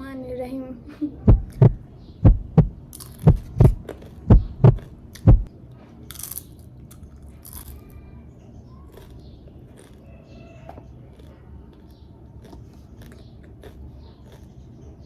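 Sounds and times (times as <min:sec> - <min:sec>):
heartbeat thumps: 0:01.2 - 0:05.5.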